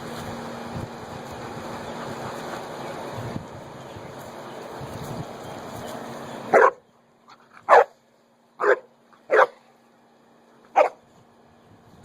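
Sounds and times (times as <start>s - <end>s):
dog barking: 6.5s - 6.8s, 7.7s - 8.0s, 8.6s - 9.6s, 10.8s - 11.0s.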